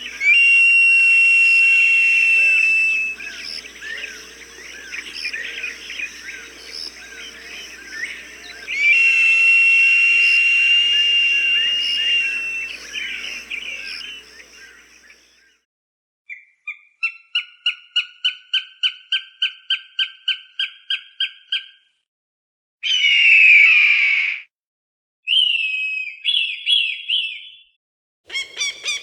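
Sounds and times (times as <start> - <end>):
hawk screaming: 0.0 - 14.8
small birds chirping: 0.0 - 15.4, 28.3 - 29.0.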